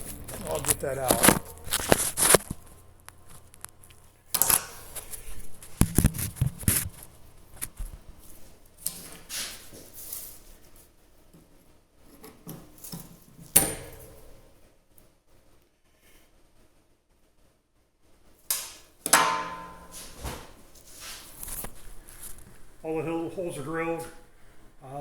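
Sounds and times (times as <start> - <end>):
sharp metal clack: 18.5 - 20.0.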